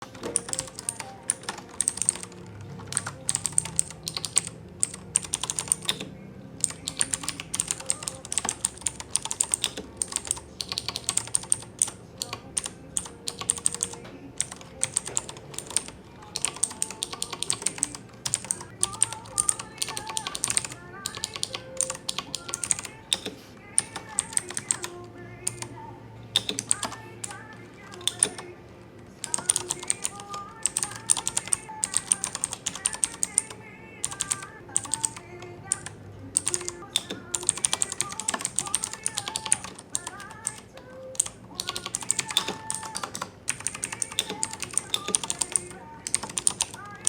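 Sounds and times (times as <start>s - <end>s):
mechanical keyboard typing: 0.0s - 25.7s, 26.4s - 28.6s, 29.2s - 47.0s.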